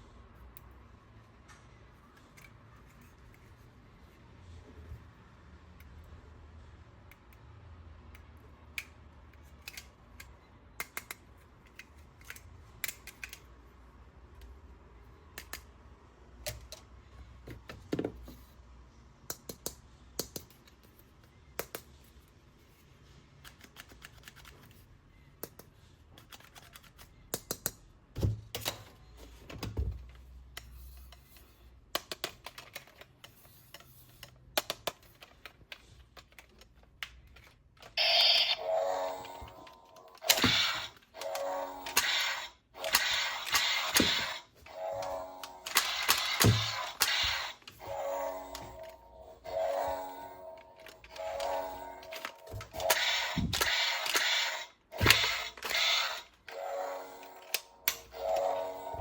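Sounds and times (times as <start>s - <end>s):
toys and packaging clicking: 8.2s - 13.7s, 23.3s - 24.8s, 25.4s - 27.8s, 30.0s - 49.1s, 50.4s - 59.0s.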